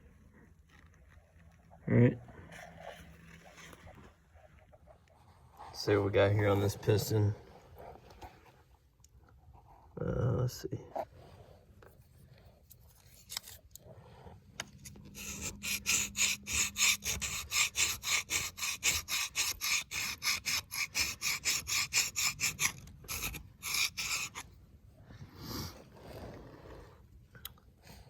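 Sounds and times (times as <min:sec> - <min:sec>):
scrubbing on metal: 0:14.8 - 0:24.6.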